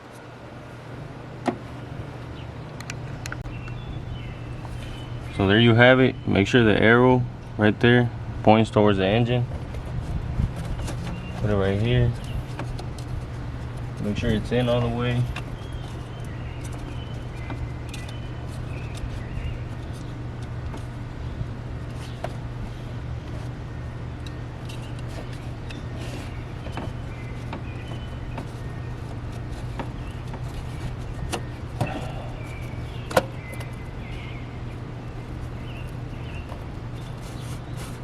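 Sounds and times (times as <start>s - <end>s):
steady low hum: 0.0s - 38.0s
clicks of car parts being fitted: 31.3s - 33.8s.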